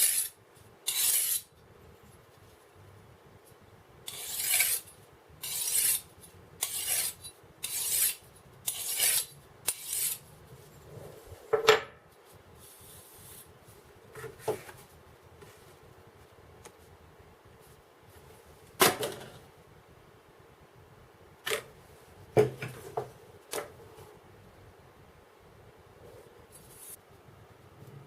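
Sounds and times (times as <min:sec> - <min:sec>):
knife sharpening strokes: 0:00.0 - 0:00.3, 0:00.9 - 0:01.5, 0:04.1 - 0:10.2
metallic scrape with ring: 0:00.9 - 0:01.5, 0:06.6 - 0:10.2.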